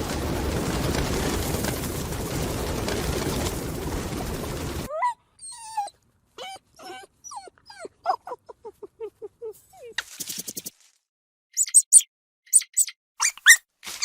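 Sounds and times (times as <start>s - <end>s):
steady rushing noise: 0.0s - 4.9s
puppy whimpering: 4.9s - 10.0s, 13.2s - 13.6s.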